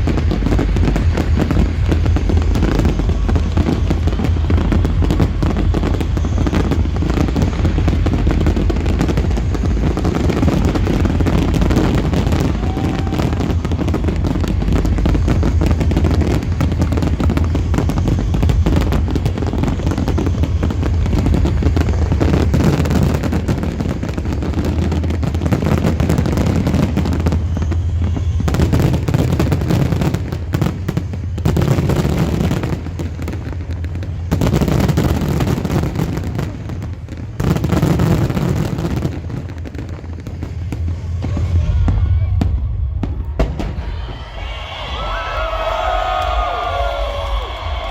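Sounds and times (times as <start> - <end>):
loud festival music: 0.0 - 30.7
fireworks bangs and crackling: 0.0 - 47.9.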